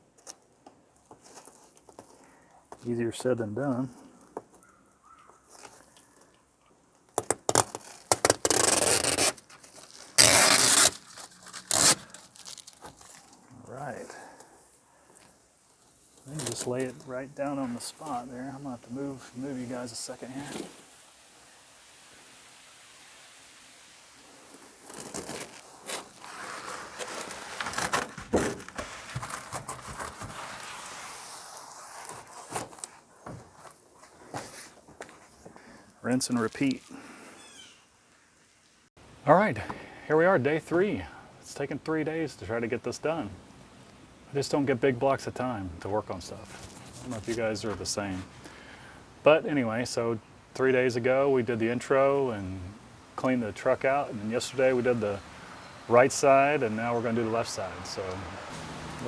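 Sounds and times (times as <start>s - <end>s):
crinkling and rustling handling noise: 0.0s - 21.2s, 24.4s - 37.0s, 43.8s - 49.6s
adhesive backing ripping: 7.2s - 13.5s, 16.2s - 17.1s, 24.8s - 33.0s.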